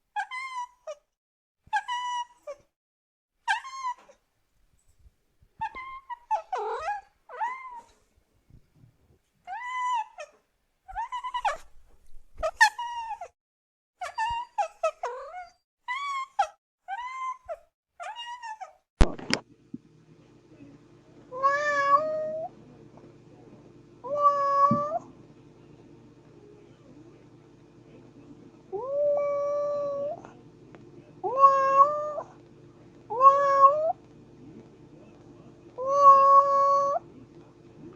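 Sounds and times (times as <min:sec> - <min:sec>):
cat meowing: 0:05.6 - 0:08.0, 0:09.5 - 0:11.7, 0:14.0 - 0:18.8, 0:21.3 - 0:22.5, 0:24.0 - 0:25.1, 0:28.8 - 0:30.2, 0:31.2 - 0:32.4, 0:33.1 - 0:34.0, 0:35.8 - 0:37.0
kitten meowing: 0:24.1 - 0:25.1, 0:31.2 - 0:32.3, 0:33.1 - 0:34.0.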